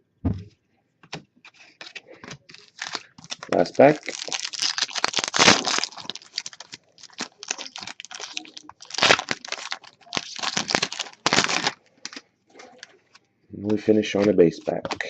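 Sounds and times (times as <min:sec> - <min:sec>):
plastic wrapper crinkling and tearing: 0:01.5 - 0:13.0.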